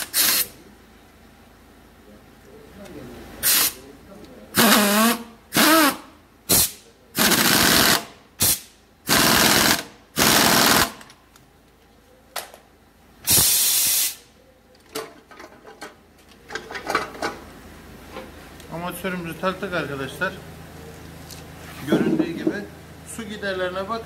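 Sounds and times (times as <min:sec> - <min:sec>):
pneumatic impact wrench rattling: 0:00.0 - 0:00.6, 0:03.4 - 0:03.8, 0:04.6 - 0:11.1, 0:13.2 - 0:14.2.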